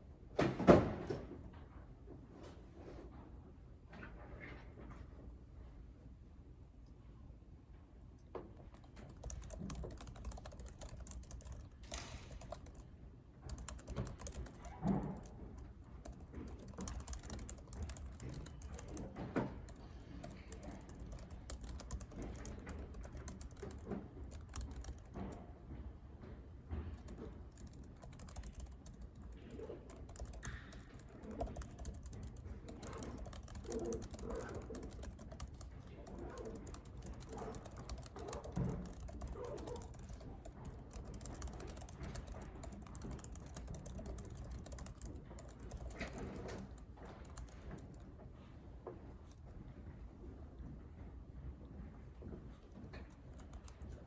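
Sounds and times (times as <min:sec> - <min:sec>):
typing on computer keyboard: 0:08.6 - 0:25.5, 0:26.8 - 0:48.2, 0:52.9 - 0:54.0.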